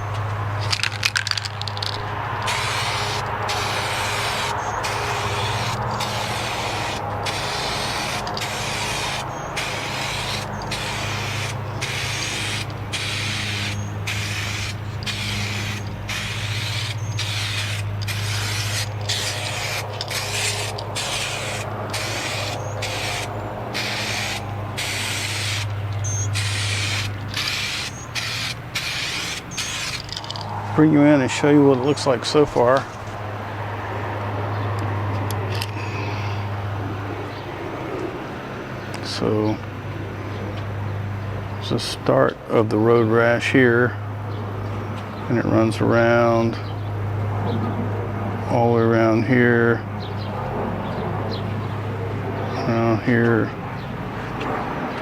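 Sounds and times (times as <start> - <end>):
constant low hum: 0.0 - 55.0
aerosol can spraying hiss: 1.8 - 30.1.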